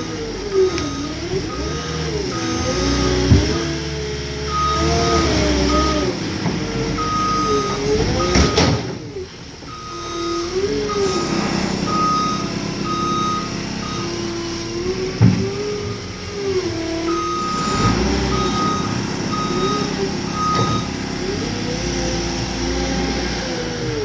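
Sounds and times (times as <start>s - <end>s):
diesel engine revving: 0.0s - 24.0s
backup alarm beeping: 0.5s - 3.6s, 4.5s - 6.0s, 7.0s - 8.8s, 9.7s - 14.4s, 17.0s - 21.1s.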